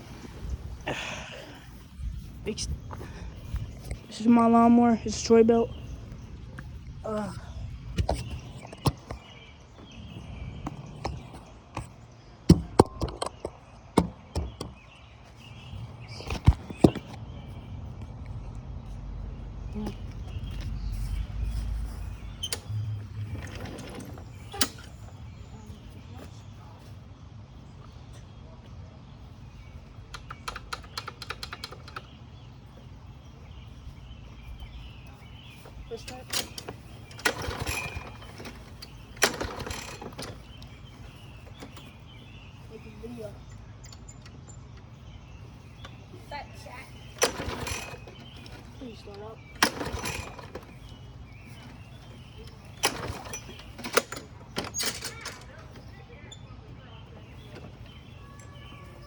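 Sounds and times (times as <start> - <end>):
steady low rumble: 0.0 - 11.6
sharp knocks and clicks: 10.6 - 14.9, 16.2 - 17.2, 30.1 - 32.2, 35.6 - 42.0.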